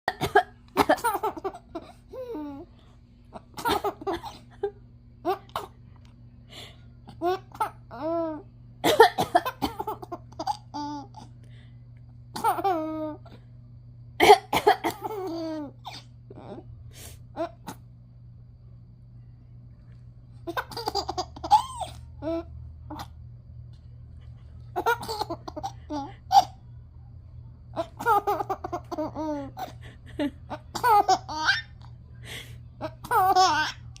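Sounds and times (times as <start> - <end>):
baby laughing: 0.2 - 2.7, 3.3 - 5.8, 7.1 - 8.4, 9.0 - 11.3, 12.4 - 13.4, 20.5 - 23.1, 24.7 - 26.6, 27.8 - 31.9, 32.8 - 34.0.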